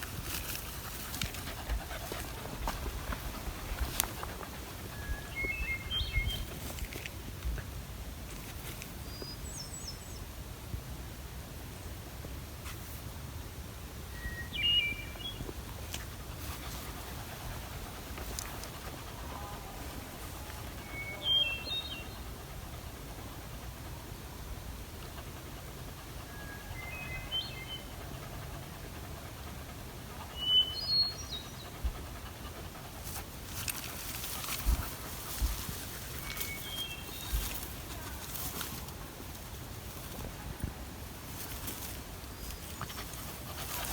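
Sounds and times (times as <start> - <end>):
songbird singing: 0.0 - 7.2, 8.9 - 10.3, 14.1 - 23.6, 24.4 - 43.9
crackling rustles: 0.0 - 9.4, 15.4 - 20.9, 32.6 - 43.9.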